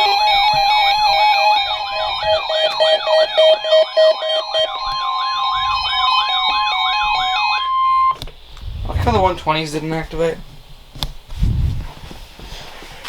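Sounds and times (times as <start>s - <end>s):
sweeping siren-like alarm tones: 0.0s - 9.5s
rapid beeping: 0.0s - 10.3s.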